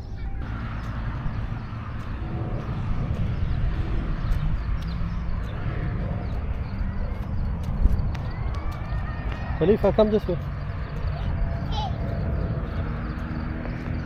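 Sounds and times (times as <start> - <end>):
heavy low rumble: 0.0 - 14.0
small ticks: 4.3 - 5.6.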